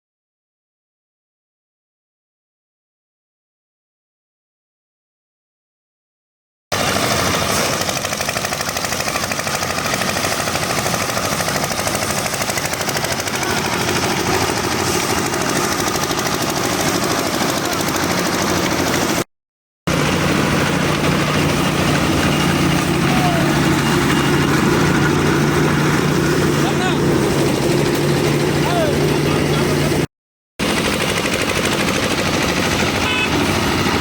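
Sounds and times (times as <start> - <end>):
machine rattling clatter: 6.8 - 19.2, 30.6 - 34.0
low engine hum: 19.9 - 34.0.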